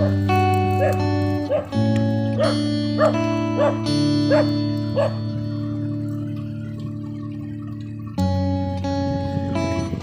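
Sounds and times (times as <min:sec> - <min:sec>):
dog barking: 0:00.0 - 0:05.3
music with held guitar chords: 0:00.0 - 0:10.0.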